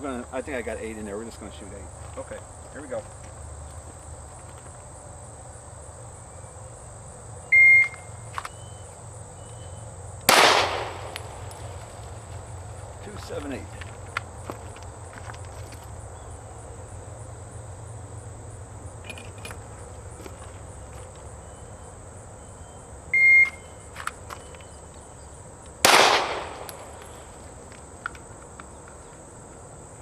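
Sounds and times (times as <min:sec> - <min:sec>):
pistol shot: 0:10.3 - 0:12.2, 0:25.8 - 0:27.5.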